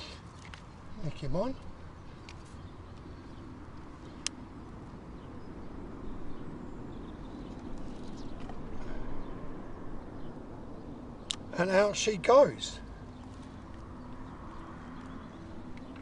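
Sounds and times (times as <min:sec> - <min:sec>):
outdoor background noise: 0:00.0 - 0:16.0.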